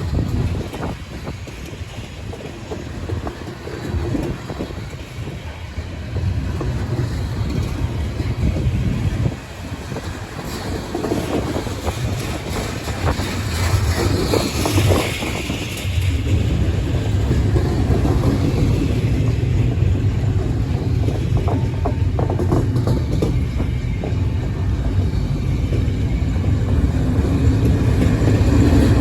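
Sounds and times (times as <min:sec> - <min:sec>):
freight train rumbling: 0:00.0 - 0:29.0
wheels clacking over rail: 0:00.0 - 0:29.0.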